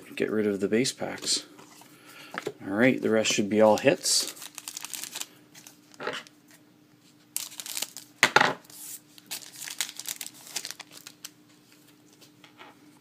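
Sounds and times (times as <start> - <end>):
foil wrappers crinkling and tearing: 3.6 - 6.3, 7.4 - 11.4.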